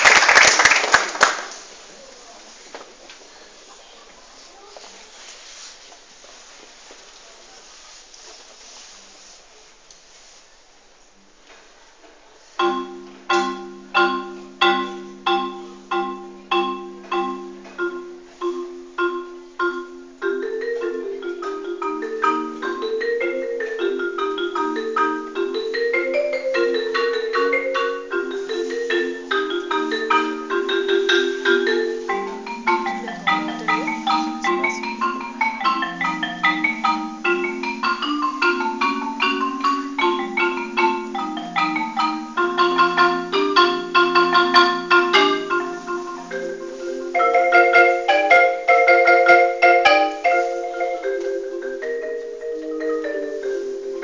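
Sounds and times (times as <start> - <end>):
solo marimba: 12.4 - 54.0.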